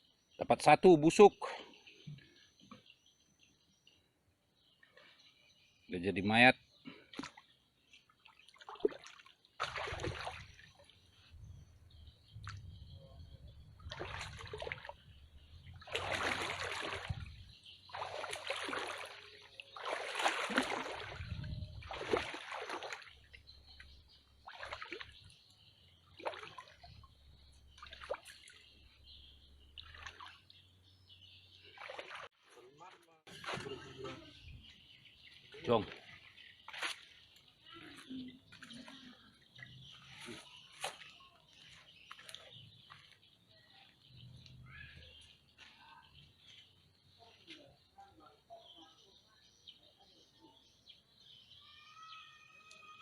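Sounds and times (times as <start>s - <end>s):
water splashing and trickling: 0.4s - 2.9s, 4.6s - 53.0s.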